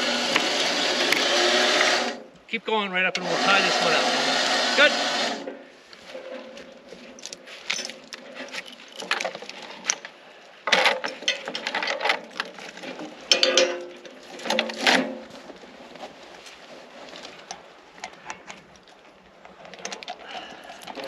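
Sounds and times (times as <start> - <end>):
metal tie-down gear rattling: 3.1 - 15.6, 19.5 - 21.0.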